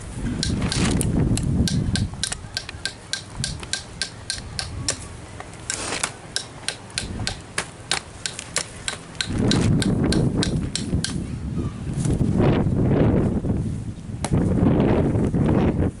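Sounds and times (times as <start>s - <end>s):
tool striking sharp knocks: 0.4s - 5.0s, 5.7s - 11.2s.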